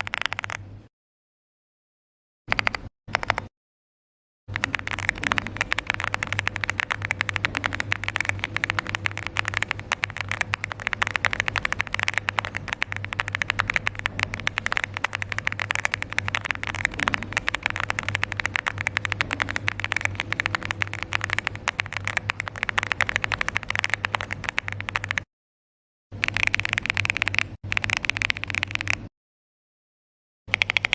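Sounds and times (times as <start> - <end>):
fast typing on mechanical keyboard: 0.0 - 0.6, 2.5 - 3.5, 4.5 - 25.3, 26.2 - 29.1, 30.5 - 30.9
steady low hum: 4.5 - 25.2.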